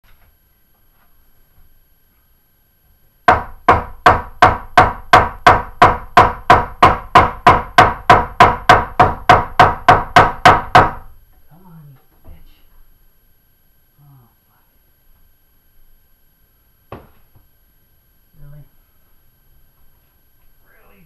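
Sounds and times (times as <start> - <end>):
hammer striking: 3.3 - 11.1.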